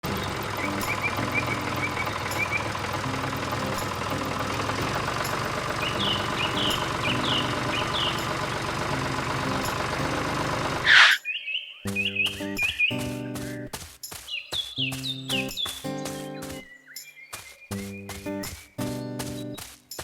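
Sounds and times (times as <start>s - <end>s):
tractor engine running: 0.0s - 11.2s, 14.9s - 16.7s, 17.7s - 20.0s
small birds chirping: 0.0s - 20.0s.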